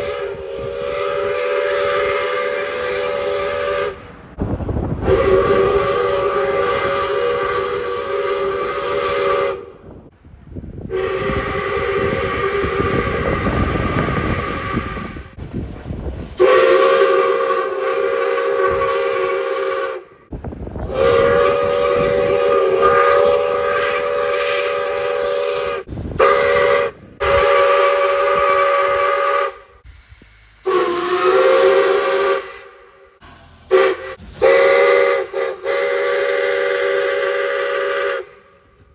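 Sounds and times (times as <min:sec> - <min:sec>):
train chime whistle blasts: 0:00.0 - 0:04.0, 0:16.4 - 0:20.2, 0:20.9 - 0:29.7, 0:30.6 - 0:33.0, 0:33.7 - 0:38.6
steam hissing: 0:00.0 - 0:10.0, 0:10.9 - 0:38.9
train rumble: 0:00.0 - 0:38.9.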